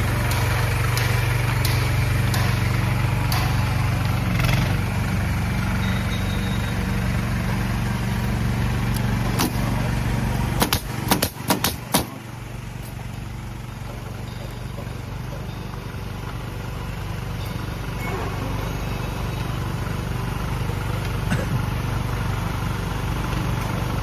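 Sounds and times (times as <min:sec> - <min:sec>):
engine running: 0:00.0 - 0:24.0
sharp knocks: 0:00.2 - 0:04.1, 0:10.6 - 0:12.2.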